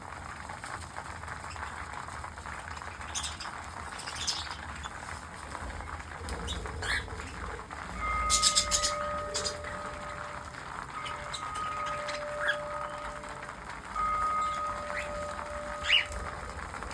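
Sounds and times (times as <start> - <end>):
parrots chirping and squawking: 2.7 - 16.9
steady high tone: 7.7 - 16.9.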